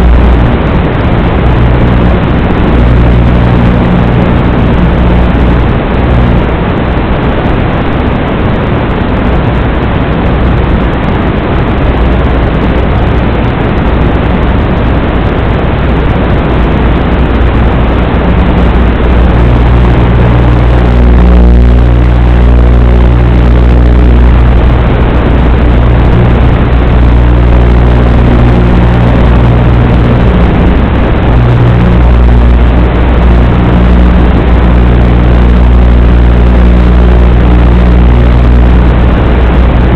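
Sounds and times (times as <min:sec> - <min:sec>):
quadcopter buzzing hum: 0:00.0 - 0:07.0, 0:17.1 - 0:39.9.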